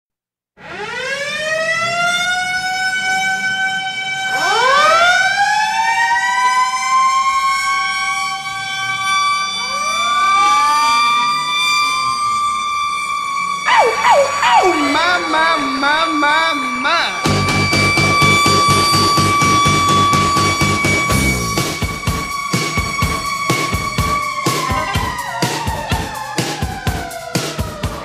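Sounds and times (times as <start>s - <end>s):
goal horn blaring: 11.6s - 23.5s, 24.6s - 25.3s
warbling sound: 13.7s - 21.9s.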